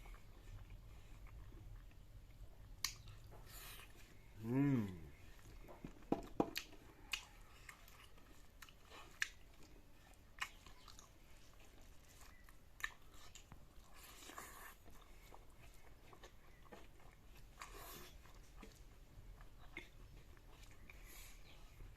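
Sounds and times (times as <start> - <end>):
person chewing food: 0.0 - 21.9
mouth clicks and smacks: 2.8 - 3.4.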